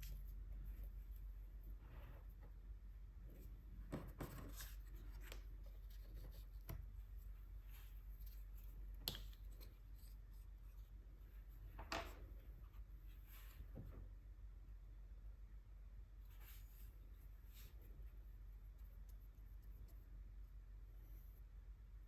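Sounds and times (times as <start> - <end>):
brush strokes on paper: 16.2 - 20.2.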